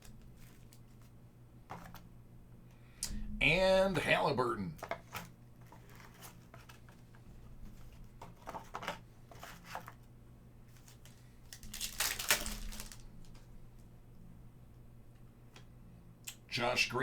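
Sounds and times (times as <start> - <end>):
packaging rustles and clicks: 10.7 - 13.5
plastic wrapper crinkle: 10.7 - 13.5.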